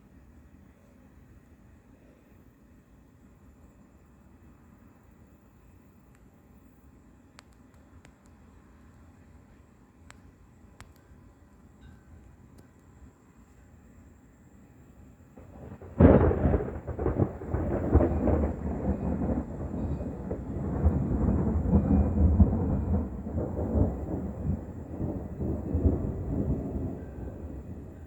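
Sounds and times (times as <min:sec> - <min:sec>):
thunder crack and rumble: 0:15.4 - 0:28.0.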